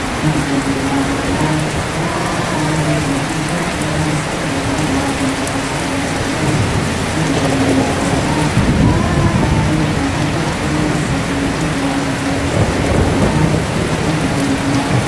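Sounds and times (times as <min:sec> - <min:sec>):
heavy rain pattering: 0:00.0 - 0:15.0
low rumble of thunder: 0:06.1 - 0:15.0.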